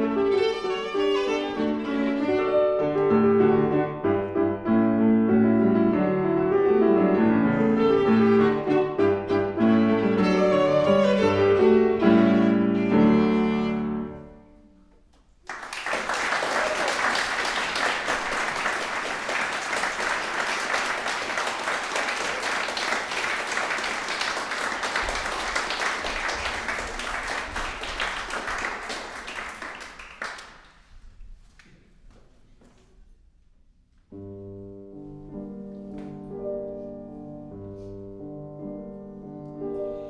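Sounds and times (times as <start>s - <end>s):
audience applause: 15.4s - 30.8s.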